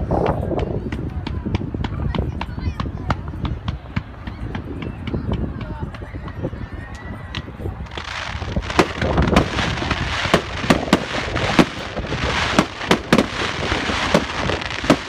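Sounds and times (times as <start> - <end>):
fireworks crackling: 7.8 - 15.0
fireworks banging: 7.9 - 15.0.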